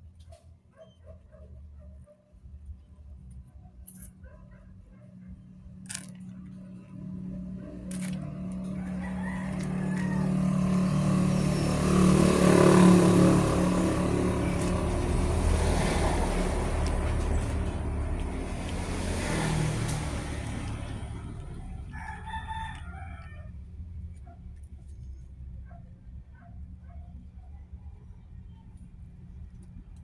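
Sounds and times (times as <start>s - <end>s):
motor vehicle passing: 4.3s - 23.6s
rooster crowing: 8.2s - 13.3s, 21.6s - 23.6s.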